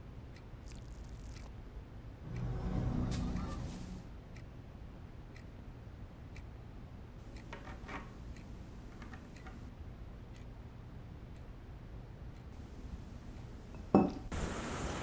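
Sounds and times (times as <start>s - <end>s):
clock ticking: 7.2s - 9.7s.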